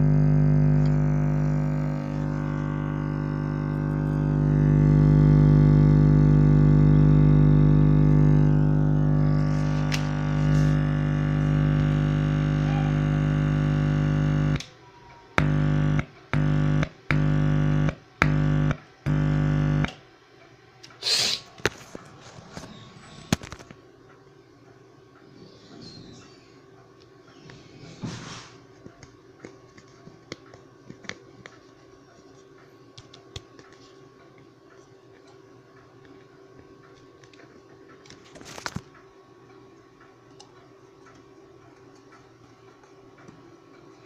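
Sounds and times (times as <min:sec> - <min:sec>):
loudspeaker electrical buzz: 0:00.0 - 0:14.7, 0:15.4 - 0:20.0.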